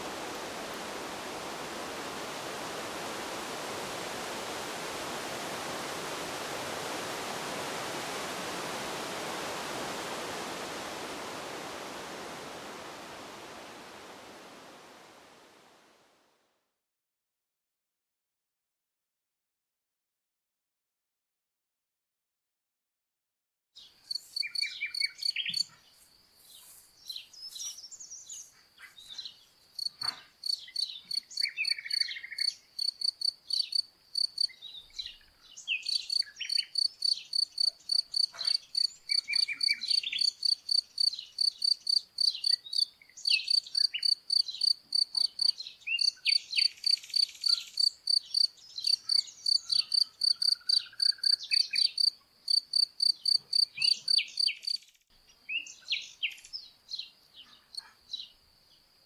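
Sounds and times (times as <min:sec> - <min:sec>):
cricket chirping: 0:28.0 - 0:34.9, 0:35.8 - 0:59.0.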